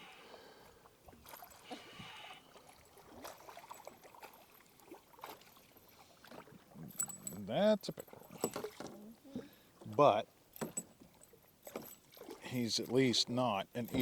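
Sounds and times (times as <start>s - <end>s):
faint water splashing: 0.0s - 14.0s
light knocks and clicks on boat: 3.0s - 14.0s.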